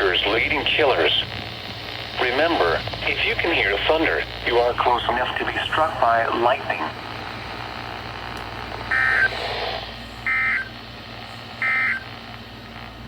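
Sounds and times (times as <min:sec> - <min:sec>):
faint radio hiss: 0:00.0 - 0:07.6
buzzy digital data tones: 0:07.9 - 0:12.3.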